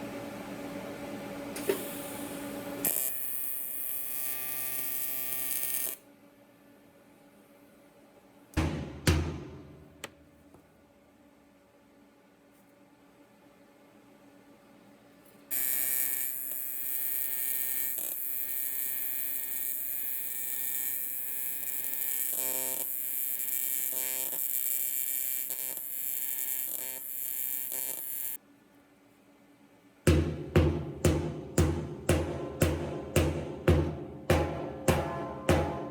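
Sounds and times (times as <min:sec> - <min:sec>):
welding arc buzzing: 0:01.7 - 0:06.0, 0:15.5 - 0:28.4
music with heavy drum hits: 0:08.6 - 0:10.0, 0:30.1 - 0:35.9.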